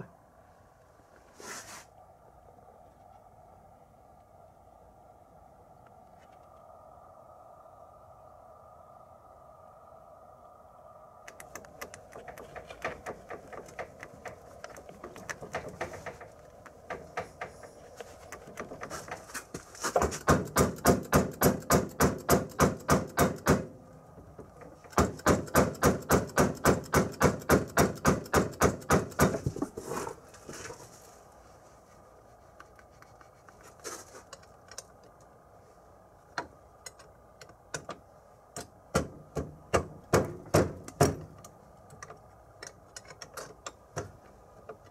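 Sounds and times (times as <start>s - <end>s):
metallic tapping of hand tools: 11.3s - 19.1s
isolated knocks: 12.1s - 17.8s.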